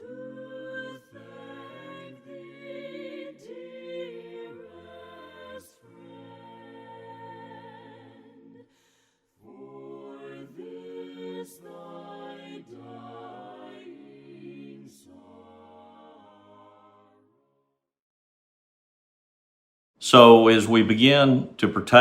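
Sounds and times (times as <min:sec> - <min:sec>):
voices singing a hymn a cappella: 0:00.0 - 0:17.4.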